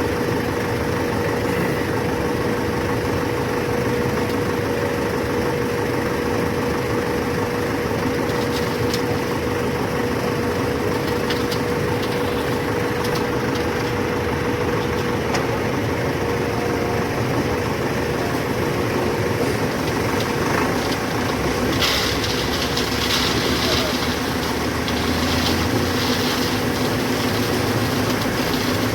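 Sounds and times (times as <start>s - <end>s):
diesel machinery engine rumble: 0.0s - 28.9s
machinery whine: 0.0s - 28.9s.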